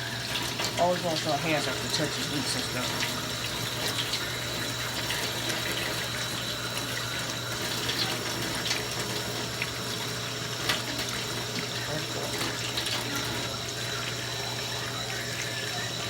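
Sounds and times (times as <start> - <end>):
tap running: 0.0 - 16.0.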